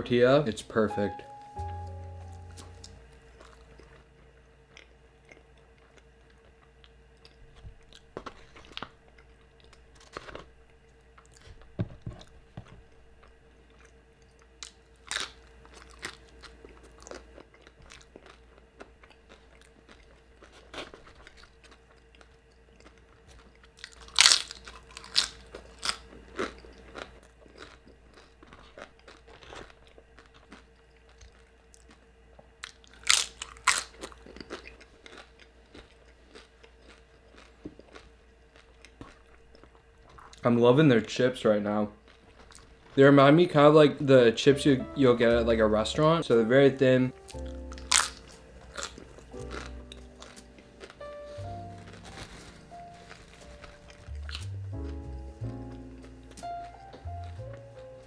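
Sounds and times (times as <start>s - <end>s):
crunching tortilla chips: 4.7s - 11.7s, 13.2s - 40.5s, 47.3s - 58.0s.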